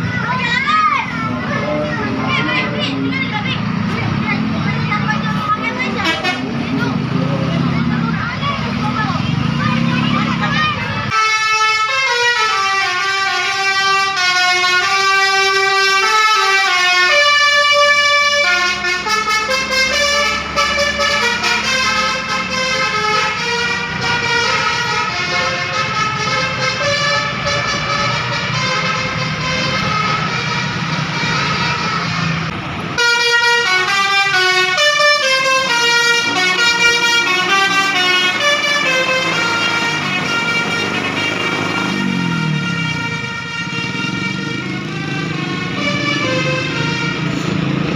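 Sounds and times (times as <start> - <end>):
vehicle engine running: 0.0 - 11.1, 33.8 - 47.9
musical bus air horn: 5.8 - 6.6, 11.1 - 47.8.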